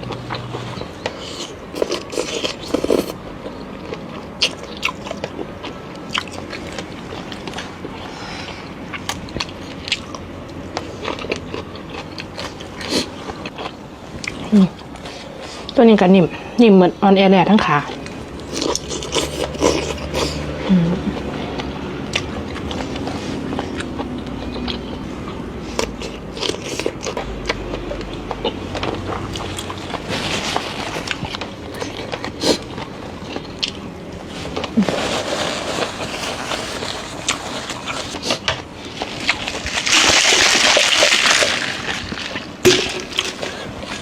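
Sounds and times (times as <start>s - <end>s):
things being handled: 34.4s - 44.0s.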